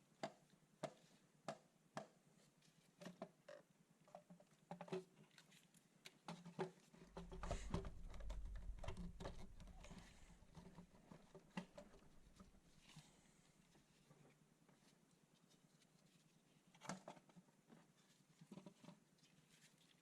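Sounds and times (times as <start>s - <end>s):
small clicks and knocks: 6.1s - 12.6s
low rumble: 7.2s - 10.8s, 11.8s - 12.6s.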